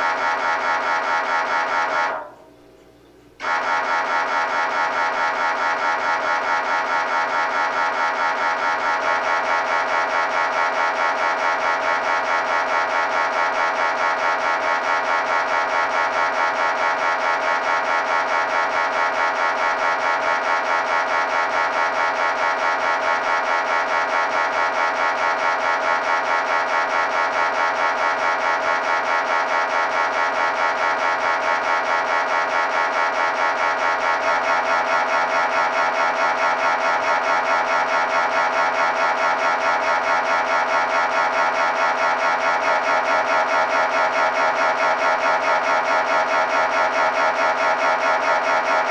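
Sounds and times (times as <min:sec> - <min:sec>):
mri scanner pulsing buzz: 0:00.0 - 0:48.9.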